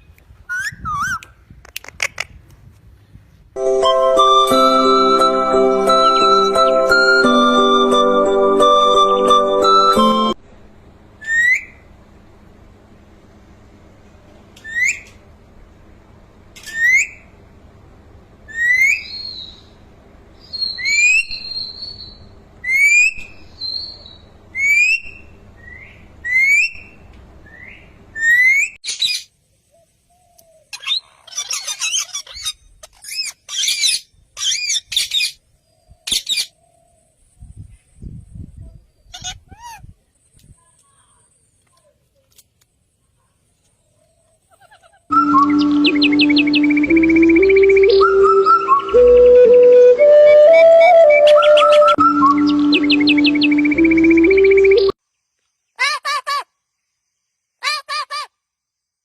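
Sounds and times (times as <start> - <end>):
steady low hum: 2.3 - 28.2
parrot whistling rising note: 3.6 - 10.4, 45.1 - 55.0
parrot raspy squawks: 30.8 - 35.3, 39.1 - 39.8, 44.5 - 45.1, 57.6 - 58.3.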